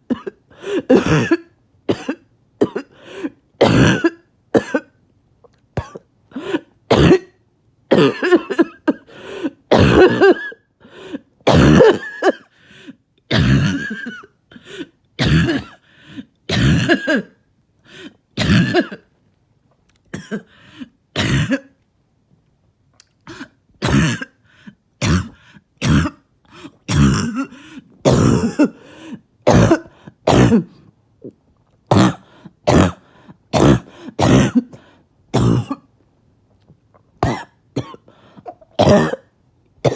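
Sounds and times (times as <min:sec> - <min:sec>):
person clearing throat: 0:00.1 - 0:02.9, 0:03.6 - 0:04.9, 0:05.8 - 0:09.0, 0:09.7 - 0:10.6, 0:11.5 - 0:12.5, 0:13.3 - 0:14.3, 0:15.2 - 0:15.8, 0:16.5 - 0:17.4, 0:18.4 - 0:19.1, 0:20.2 - 0:20.5, 0:21.2 - 0:21.8, 0:23.3 - 0:24.4, 0:25.0 - 0:28.8, 0:29.5 - 0:34.8, 0:35.4 - 0:35.9, 0:37.2 - 0:39.9
person coughing harshly: 0:00.1 - 0:05.0, 0:05.8 - 0:10.7, 0:11.5 - 0:12.5, 0:13.3 - 0:15.8, 0:16.5 - 0:17.4, 0:18.0 - 0:19.1, 0:20.1 - 0:20.5, 0:21.2 - 0:21.8, 0:23.3 - 0:24.4, 0:25.0 - 0:28.8, 0:29.5 - 0:30.8, 0:31.9 - 0:35.9, 0:37.2 - 0:39.9.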